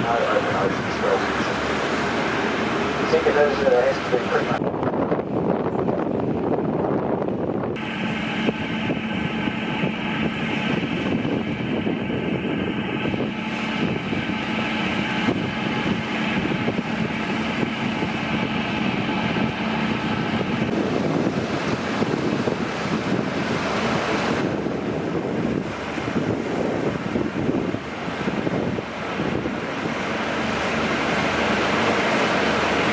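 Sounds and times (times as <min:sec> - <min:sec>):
ship engine hum: 0:00.0 - 0:32.9
wind rushing over microphone: 0:00.0 - 0:32.9.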